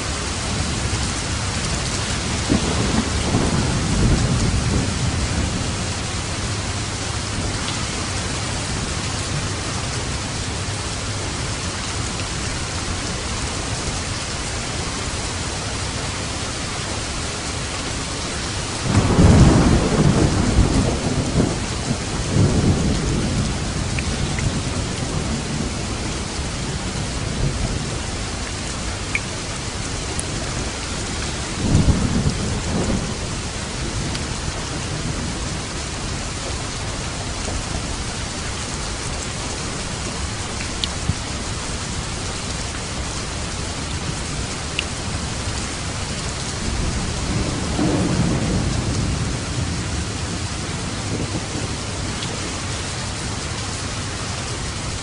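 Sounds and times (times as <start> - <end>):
thunder rumbling: 0.0 - 13.9, 17.5 - 55.0
steady rain: 0.0 - 55.0
loud thunderclap: 2.2 - 5.8, 18.8 - 25.8, 46.6 - 51.9.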